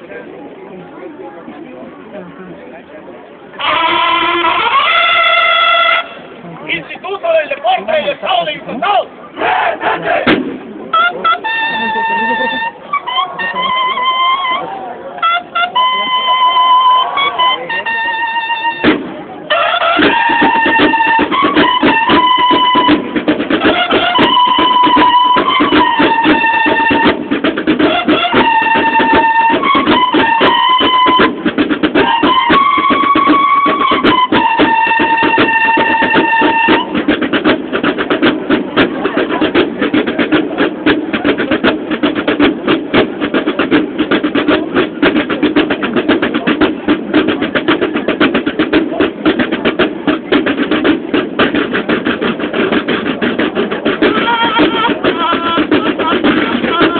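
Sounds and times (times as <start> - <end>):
bugles playing held notes: 3.6 - 56.9
snare drums cadence: 18.4 - 56.9.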